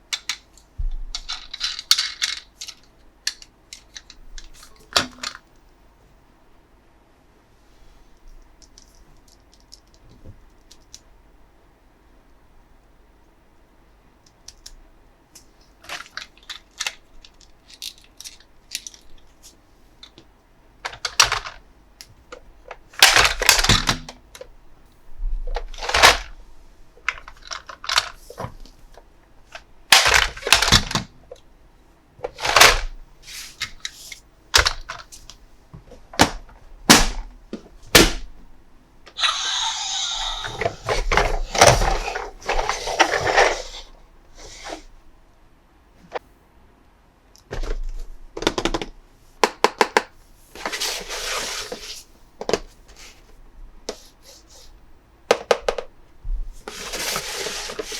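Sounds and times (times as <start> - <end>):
packaging rustling and scraping: 40.2 - 44.9, 50.5 - 52.1, 56.6 - 57.9.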